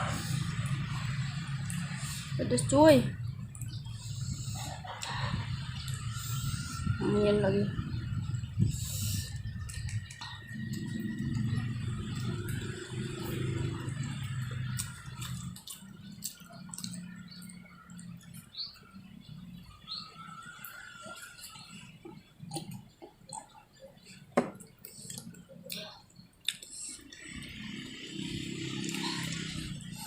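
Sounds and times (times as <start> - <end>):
wet chewing and lip-smacking: 8.3 - 19.1, 19.7 - 30.0.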